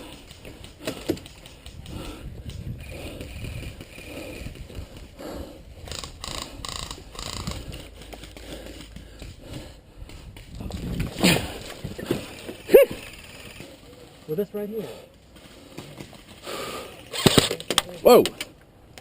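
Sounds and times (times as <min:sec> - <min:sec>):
gear and clothing rustling on mic: 0:07.2 - 0:12.7.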